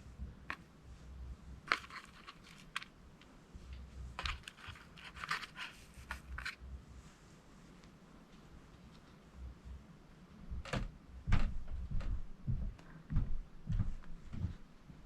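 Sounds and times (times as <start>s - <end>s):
small parts clicking and scraping: 1.7s - 3.3s, 4.2s - 6.6s.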